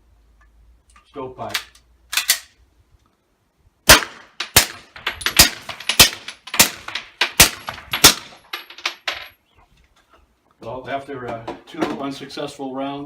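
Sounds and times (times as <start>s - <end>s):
suppressed pistol shots: 3.9s - 8.3s.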